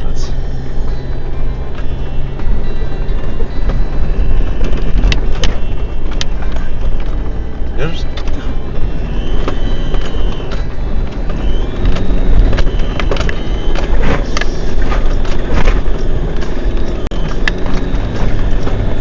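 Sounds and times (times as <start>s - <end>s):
motor vehicle low rumble: 0.0s - 19.0s
thin high whistle: 8.8s - 10.6s, 11.3s - 15.3s.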